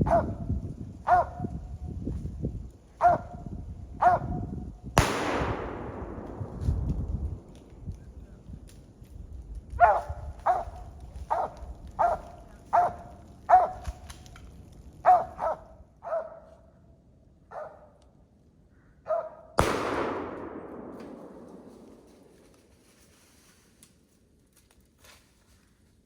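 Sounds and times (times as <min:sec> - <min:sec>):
dog barking: 0:00.0 - 0:00.4, 0:01.0 - 0:01.5, 0:03.0 - 0:03.4, 0:04.0 - 0:04.4, 0:09.8 - 0:13.8, 0:15.0 - 0:16.6, 0:17.5 - 0:18.0, 0:19.0 - 0:19.6
gunshot with echo: 0:05.0 - 0:07.8, 0:19.6 - 0:22.7.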